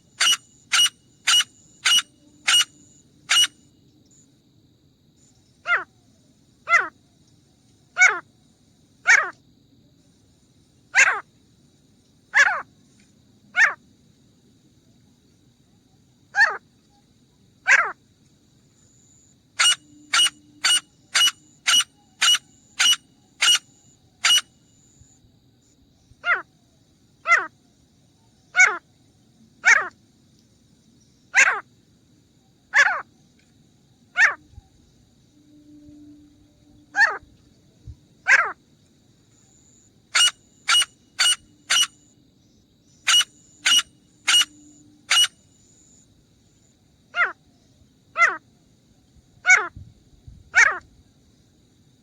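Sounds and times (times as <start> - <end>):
francolin harsh calls: 0.0 - 3.6, 10.9 - 11.2, 19.6 - 24.9, 26.1 - 26.5, 31.3 - 31.7, 32.7 - 33.1, 38.2 - 38.6, 39.6 - 42.1, 42.8 - 46.0, 48.1 - 48.5.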